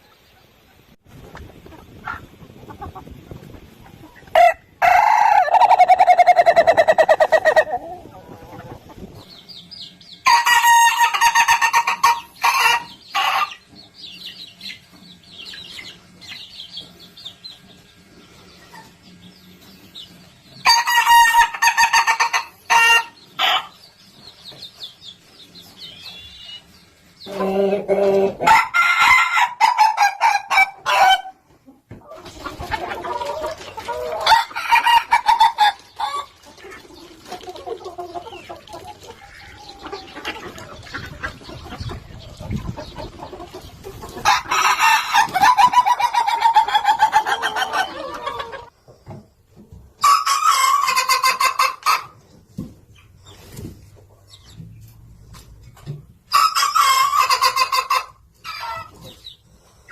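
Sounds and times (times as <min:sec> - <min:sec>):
roosters crowing: 0:04.3 - 0:08.6, 0:27.2 - 0:31.4, 0:32.2 - 0:36.3, 0:44.2 - 0:48.7.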